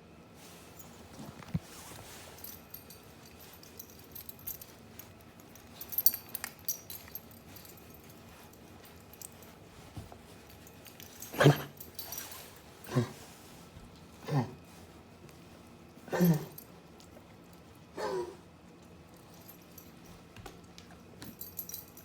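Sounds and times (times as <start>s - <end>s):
dog coughing: 11.3s - 12.0s, 12.8s - 13.3s, 16.0s - 16.6s, 17.9s - 18.4s.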